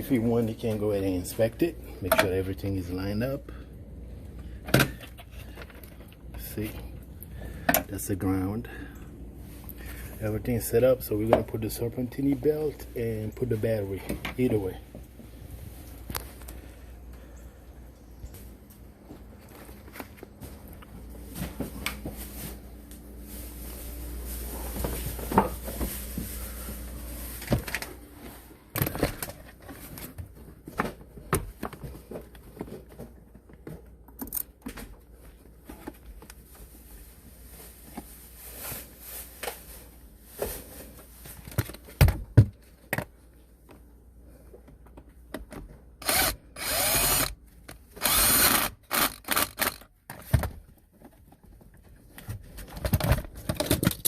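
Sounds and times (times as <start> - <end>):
power tool whirring: 46.0 - 47.4, 48.0 - 49.8.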